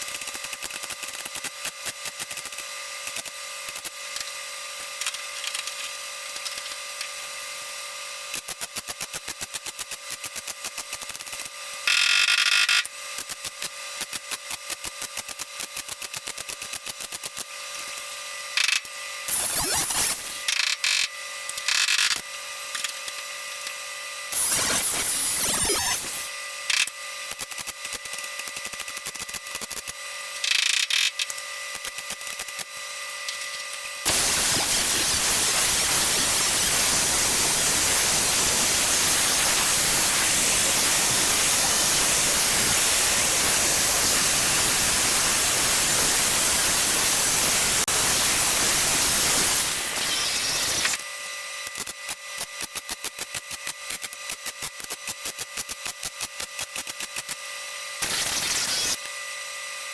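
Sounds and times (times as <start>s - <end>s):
welding crackling bursts: 19.3s - 20.5s, 24.3s - 26.3s, 34.0s - 51.0s, 58.0s - 59.0s
loud even hiss: 34.1s - 51.0s.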